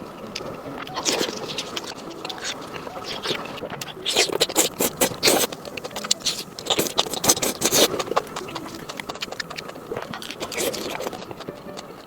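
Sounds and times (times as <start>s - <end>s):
chewing and mouth sounds: 0.0s - 12.0s.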